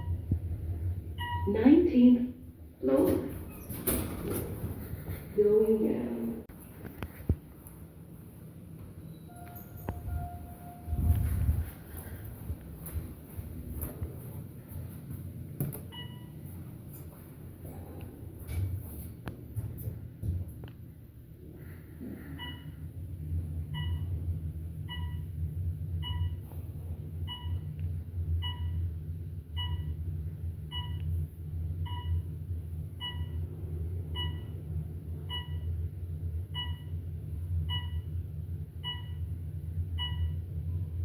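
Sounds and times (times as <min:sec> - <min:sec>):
elevator low hum: 0:00.0 - 0:41.0
short electronic beeps: 0:09.1 - 0:11.2.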